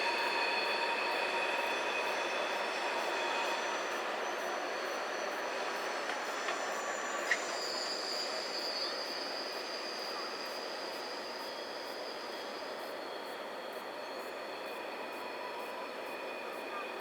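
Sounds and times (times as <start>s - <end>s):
high-pitched wheel squeal: 0.0s - 12.6s.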